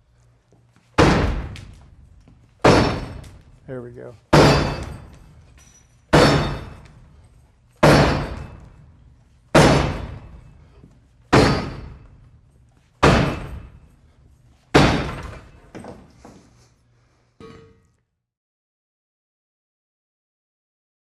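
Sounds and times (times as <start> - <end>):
battering ram hitting door: 1.0 - 1.6, 2.6 - 3.2, 4.4 - 5.0, 6.1 - 6.7, 7.8 - 8.4, 9.6 - 10.2, 11.4 - 11.9, 13.0 - 13.6.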